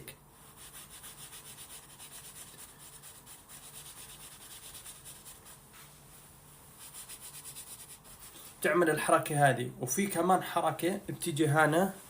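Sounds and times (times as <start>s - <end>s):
hands rubbing skin: 0.5s - 8.6s.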